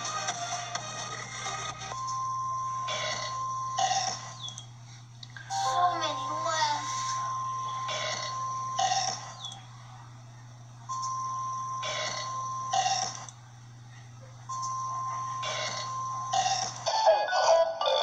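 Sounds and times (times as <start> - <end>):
music: 0.0 - 2.2, 5.5 - 7.8
low steady hum: 0.0 - 18.0
burp: 2.9 - 4.2, 7.9 - 9.2, 11.9 - 13.2, 15.5 - 16.8
steady high beep: 5.5 - 8.9
speech: 5.6 - 7.2.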